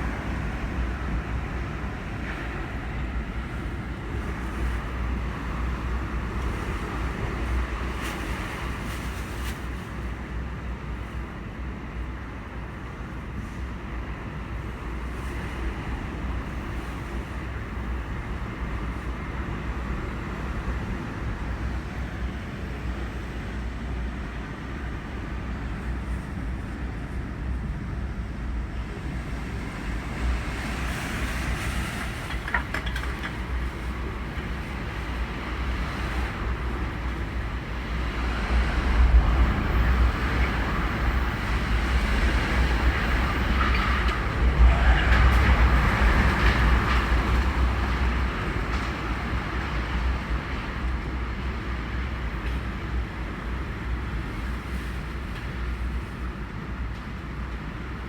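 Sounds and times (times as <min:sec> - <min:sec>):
wind buffeting microphone: 0:14.0 - 0:58.0.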